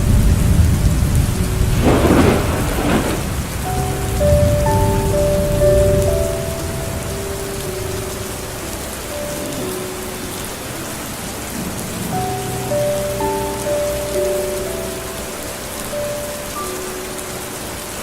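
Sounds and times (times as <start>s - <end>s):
low thunder rumble: 0.0s - 9.6s
soft slow melody notes: 0.0s - 18.0s
steady rain falling: 0.0s - 18.0s.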